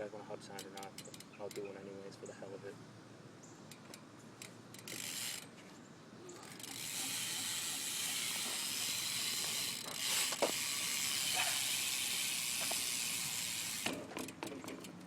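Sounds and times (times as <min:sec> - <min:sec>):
bicycle hub ticking: 0:03.7 - 0:05.5, 0:06.4 - 0:14.9.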